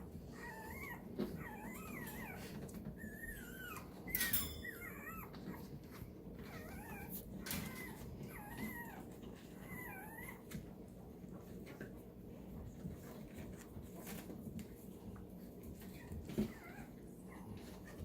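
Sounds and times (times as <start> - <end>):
puppies whimpering: 0.0 - 10.6, 15.8 - 18.0.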